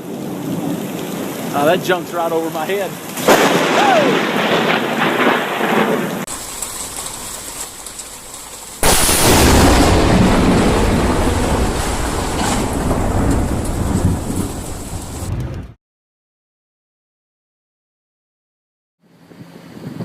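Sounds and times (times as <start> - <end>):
rainstorm: 0.0 - 15.8
thunder clap rumbling: 0.0 - 15.8.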